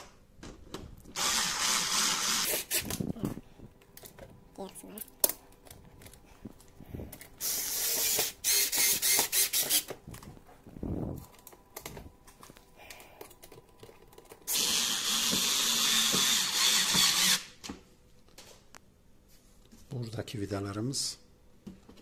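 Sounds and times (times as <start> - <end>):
cordless screwdriver driving screws: 1.2 - 2.9, 7.4 - 9.9.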